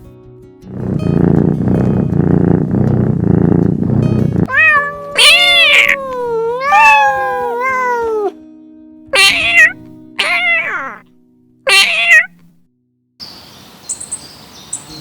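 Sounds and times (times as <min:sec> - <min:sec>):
pulsing low rumble: 0:00.7 - 0:06.0
cat meowing: 0:04.5 - 0:08.4, 0:09.2 - 0:11.0, 0:11.7 - 0:12.5.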